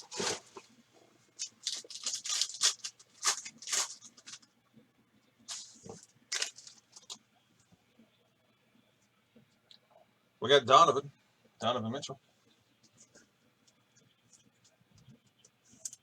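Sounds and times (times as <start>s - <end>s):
plastic wrapper tearing and crinkling: 1.4s - 4.4s, 5.5s - 7.2s.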